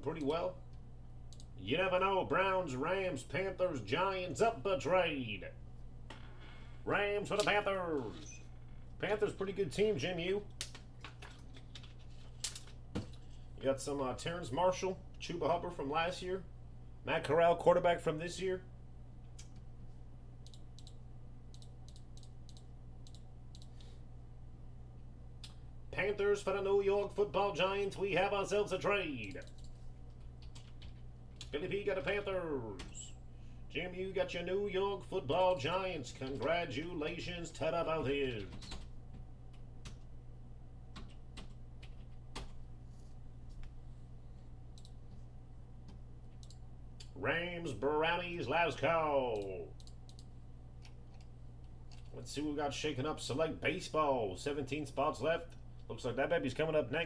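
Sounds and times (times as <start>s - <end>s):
low electrical hum: 0.0s - 57.0s
computer mouse clicking: 20.4s - 23.9s, 29.2s - 31.5s, 45.9s - 47.1s, 49.4s - 51.3s.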